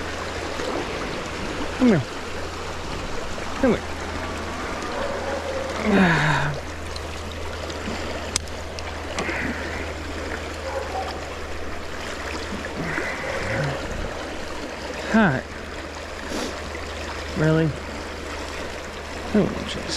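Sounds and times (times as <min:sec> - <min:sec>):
stream running: 0:00.0 - 0:19.9.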